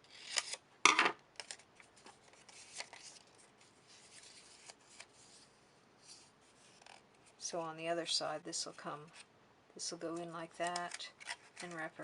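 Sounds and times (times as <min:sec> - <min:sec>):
paper and cardboard rustling: 0:01.4 - 0:07.0.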